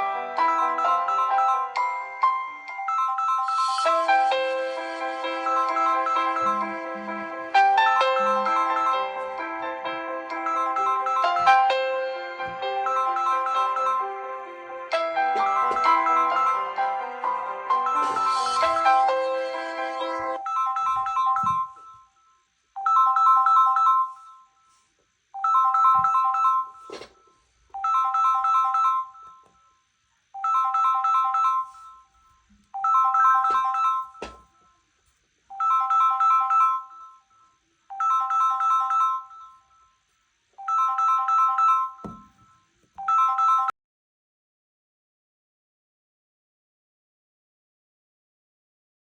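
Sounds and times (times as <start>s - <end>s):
warbling phone ringtone: 0.0s - 9.6s, 10.3s - 24.7s, 25.4s - 27.0s, 27.8s - 29.8s, 30.4s - 32.2s, 32.8s - 34.4s, 35.5s - 40.0s, 40.6s - 43.7s.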